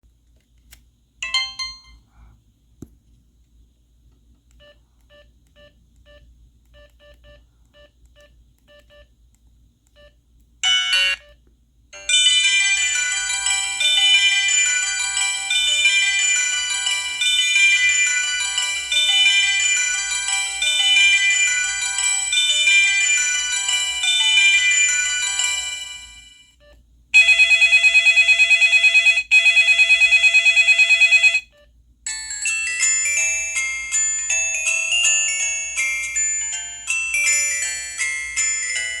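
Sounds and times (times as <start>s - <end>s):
phone ringtone melody: 10.6s - 11.3s, 12.0s - 26.5s, 27.2s - 31.5s, 32.1s - 39.0s.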